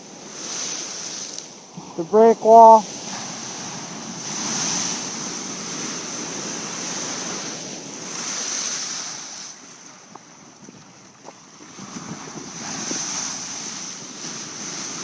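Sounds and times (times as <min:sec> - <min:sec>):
waves crashing against wall: 0:00.0 - 0:01.7, 0:02.4 - 0:15.0
wind rushing over microphone: 0:00.0 - 0:15.0.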